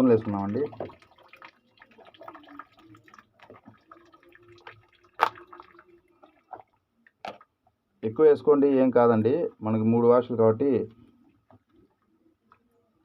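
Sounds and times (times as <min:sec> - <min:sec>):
water dripping and trickling: 0:00.0 - 0:06.8.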